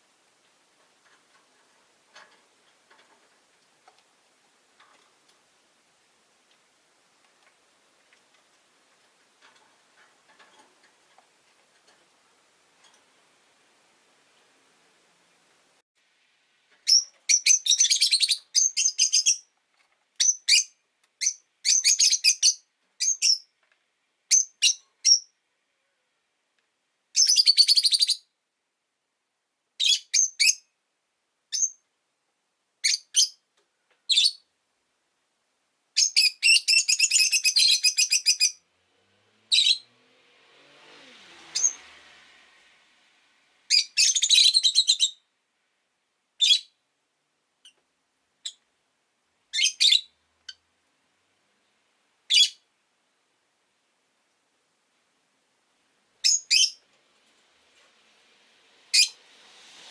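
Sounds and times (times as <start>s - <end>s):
faint rush of noise: 0.0s - 16.8s, 38.6s - 44.0s, 56.8s - 59.9s
lovebirds chirping: 16.8s - 19.5s, 20.2s - 23.5s, 36.0s - 38.6s, 41.6s - 41.8s, 43.7s - 45.3s, 49.5s - 50.6s, 52.3s - 52.6s, 56.2s - 56.8s.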